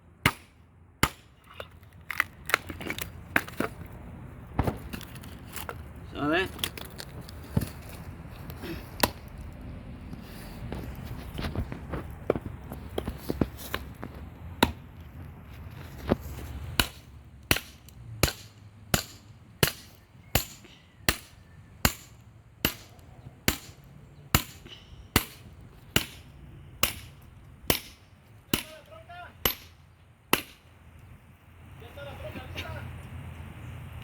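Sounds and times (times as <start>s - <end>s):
sledgehammer striking axe: 0.2s - 1.6s, 9.0s - 9.2s, 14.6s - 14.9s, 16.8s - 22.9s, 23.5s - 23.8s, 24.4s - 28.8s, 29.4s - 30.6s.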